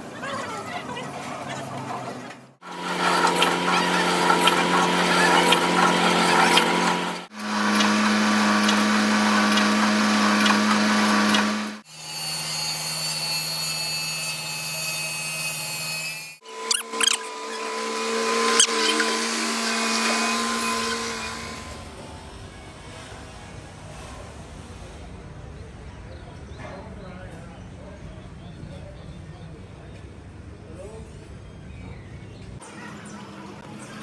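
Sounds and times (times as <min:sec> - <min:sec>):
electric power tools humming: 0:02.6 - 0:21.9.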